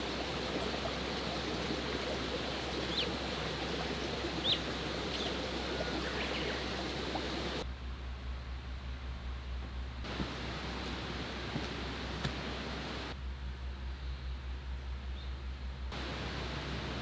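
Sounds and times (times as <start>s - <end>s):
rushing water: 0.0s - 7.7s, 10.1s - 13.2s, 15.9s - 17.0s
bird chirps: 2.8s - 7.6s.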